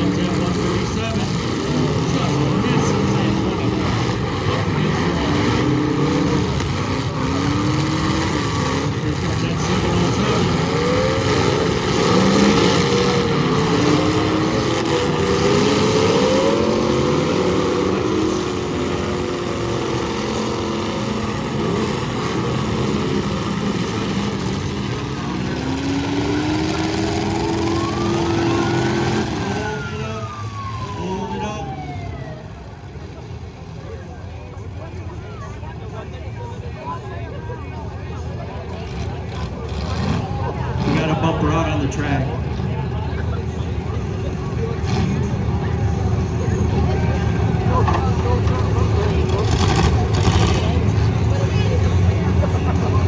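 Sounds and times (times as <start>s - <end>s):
car engines revving: 0.0s - 53.0s
siren-like rising tone: 22.2s - 32.9s.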